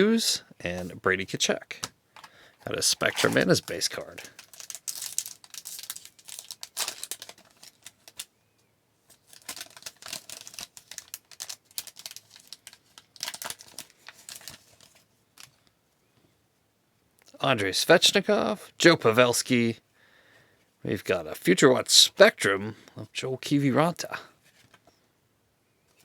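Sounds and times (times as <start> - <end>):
cards shuffled: 1.8 - 8.3
wrapper being torn open: 2.9 - 8.3, 9.1 - 15.5.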